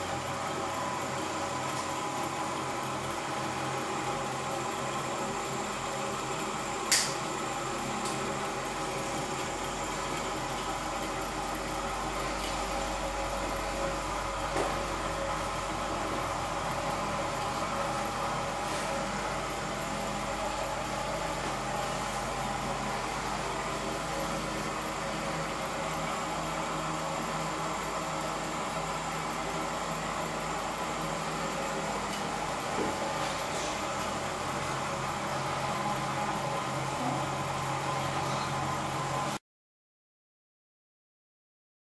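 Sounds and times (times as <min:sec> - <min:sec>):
engine mechanical hum: 0:00.0 - 0:39.4.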